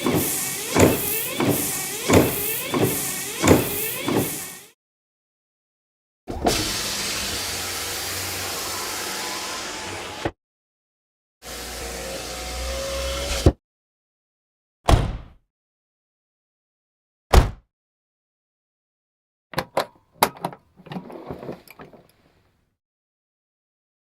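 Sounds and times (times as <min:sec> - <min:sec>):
car engine running: 0:00.0 - 0:04.4
short thump: 0:17.3 - 0:17.6.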